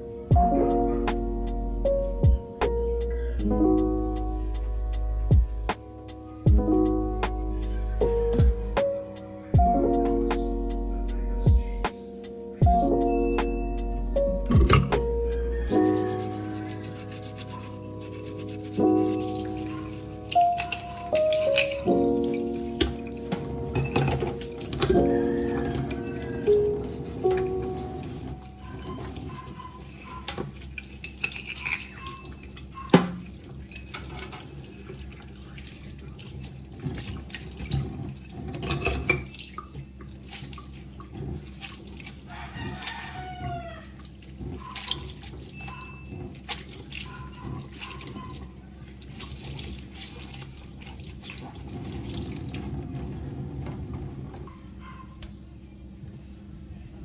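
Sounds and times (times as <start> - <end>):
dishes clinking and knocking: 14.5 - 15.1, 22.8 - 26.2, 38.5 - 39.3
tap water running into sink: 18.8 - 54.4.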